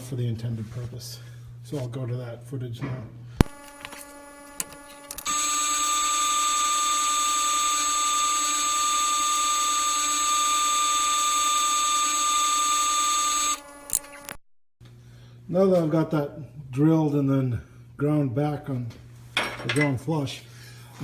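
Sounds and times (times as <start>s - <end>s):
electric drill boring through steel: 3.4s - 14.3s.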